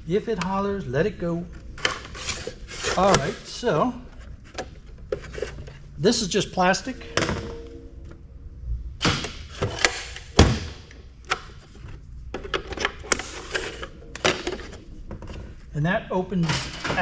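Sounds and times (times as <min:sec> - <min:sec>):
plastic parts knocking and clicking: 0:09.1 - 0:15.5.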